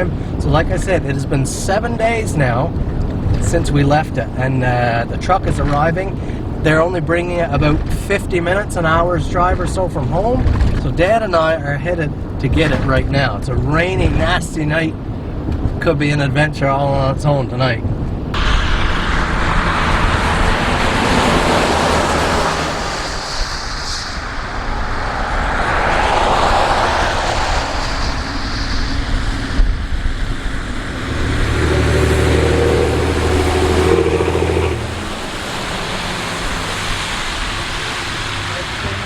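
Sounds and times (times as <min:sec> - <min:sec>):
tyres on wet road: 0:00.0 - 0:16.2, 0:17.8 - 0:39.0
engine drone: 0:18.0 - 0:39.0.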